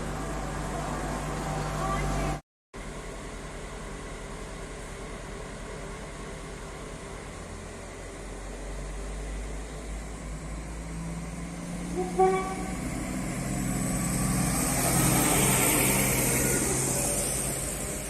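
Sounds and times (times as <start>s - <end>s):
train running drone: 0.0s - 18.0s
train horn toot: 11.9s - 12.8s.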